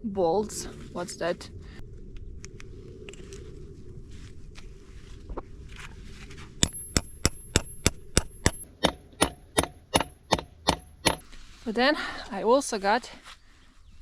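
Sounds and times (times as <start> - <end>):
hammer striking metal bolt: 6.6 - 11.2.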